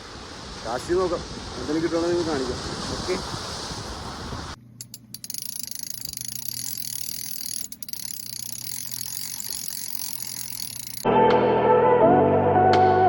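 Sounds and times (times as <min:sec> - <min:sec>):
fishing reel ticking: 0:04.8 - 0:11.1.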